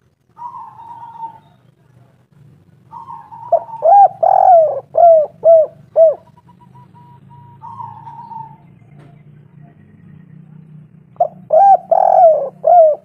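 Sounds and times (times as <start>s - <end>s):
dove cooing: 0.4s - 1.6s, 2.8s - 9.8s, 11.1s - 13.0s.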